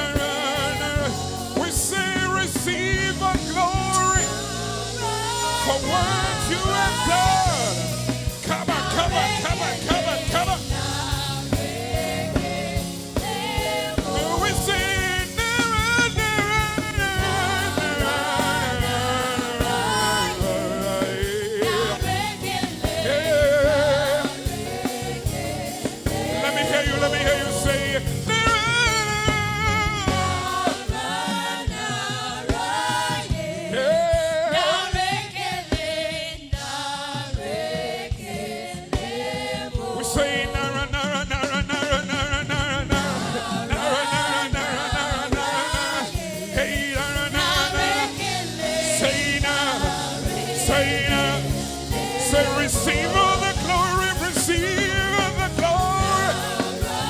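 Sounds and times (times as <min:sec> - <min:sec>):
gospel praise singing: 0:00.0 - 0:57.0
live band with bass and beat: 0:00.0 - 0:57.0.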